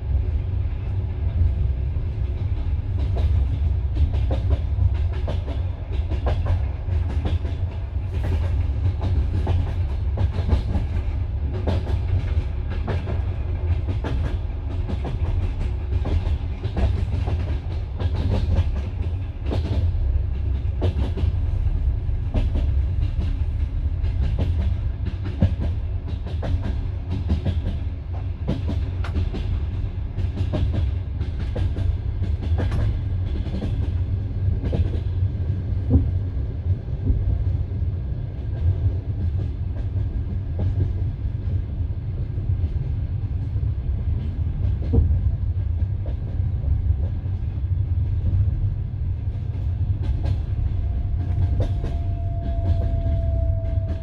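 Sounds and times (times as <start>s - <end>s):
train carriage rumble: 0.0s - 54.0s.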